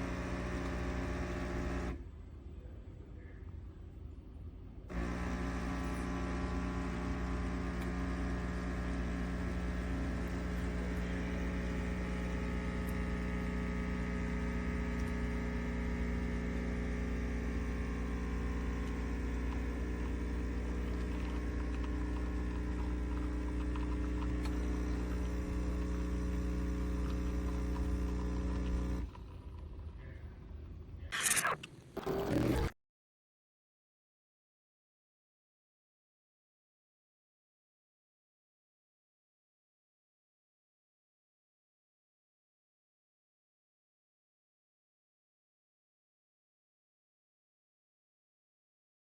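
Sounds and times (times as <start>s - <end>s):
espresso machine pump humming: 0.0s - 2.0s, 4.9s - 30.0s.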